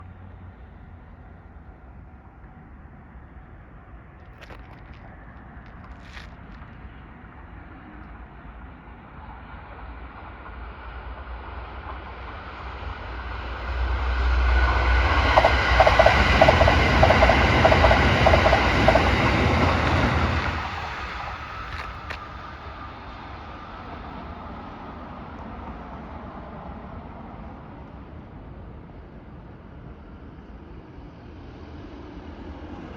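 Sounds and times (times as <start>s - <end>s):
electric train passing: 6.8s - 32.9s
wheels clattering over rail joints: 14.8s - 22.6s.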